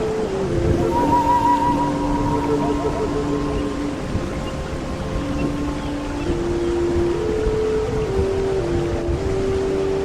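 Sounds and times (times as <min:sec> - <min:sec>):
slow ambient music: 0:00.0 - 0:10.0
rain hissing: 0:00.5 - 0:06.5
wavering higher tone: 0:00.5 - 0:07.6.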